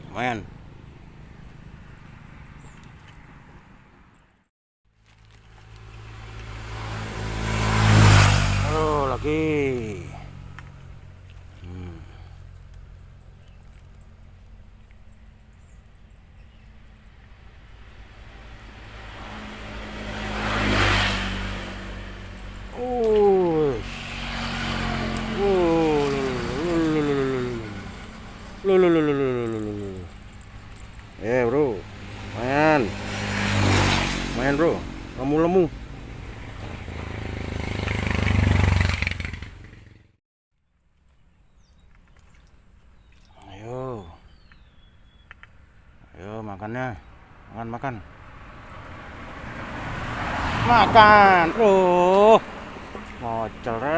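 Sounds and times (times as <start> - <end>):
low traffic hum: 0.0 - 53.9
vehicle passing close by: 5.6 - 15.5, 16.3 - 40.1, 47.1 - 53.9.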